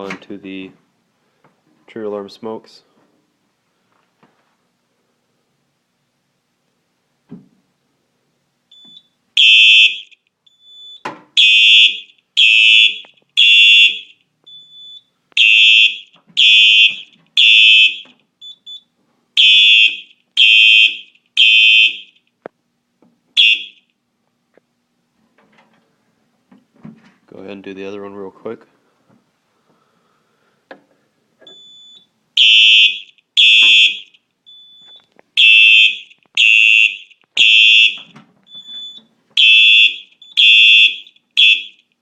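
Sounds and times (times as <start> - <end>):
fire alarm horn blasts: 9.4 - 10.2, 11.4 - 14.2, 15.4 - 18.1, 19.4 - 22.2, 23.4 - 23.8, 32.4 - 34.2, 35.4 - 38.0, 39.4 - 41.8.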